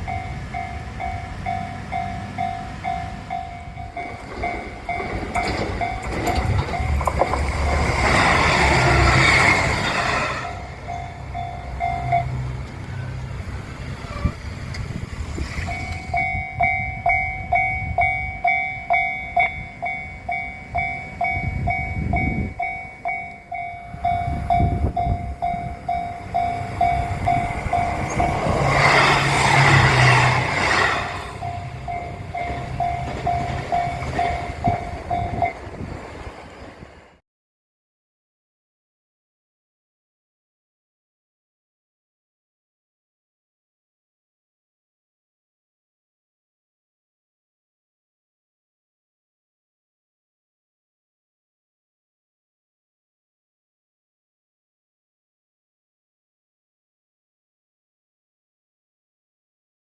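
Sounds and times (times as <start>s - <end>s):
level-crossing alarm ringing: 0.0s - 12.5s, 15.7s - 36.2s
train passing: 0.0s - 37.2s.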